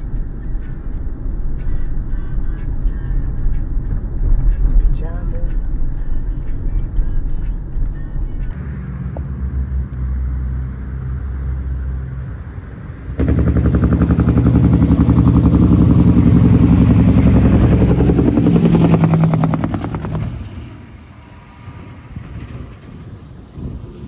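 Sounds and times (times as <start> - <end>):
road rumble inside car: 0.0 - 21.0
truck engine passing: 8.5 - 24.0.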